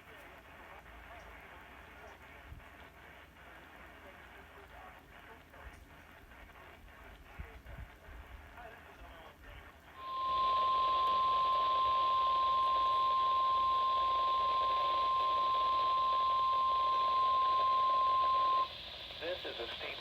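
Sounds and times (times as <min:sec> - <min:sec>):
radio static: 0:00.0 - 0:20.0
steady high alarm beep: 0:10.0 - 0:18.9.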